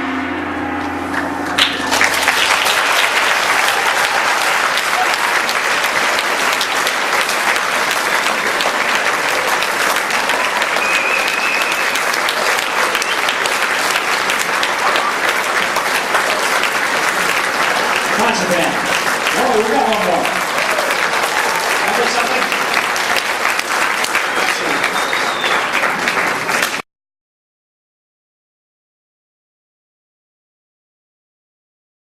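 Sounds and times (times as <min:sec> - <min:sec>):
band holding final chord: 0:00.0 - 0:03.6
audience applauding: 0:01.6 - 0:26.8.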